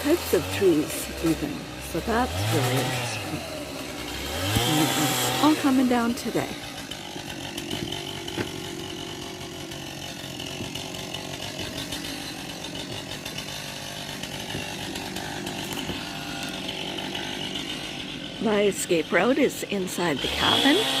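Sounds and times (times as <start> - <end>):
distant chainsaw running: 0.0 - 21.0.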